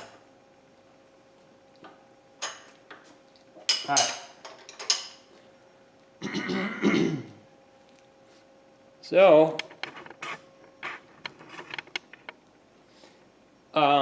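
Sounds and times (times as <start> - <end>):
faint steady hum: 0.0 - 14.0
metal tools clinking: 3.7 - 5.3.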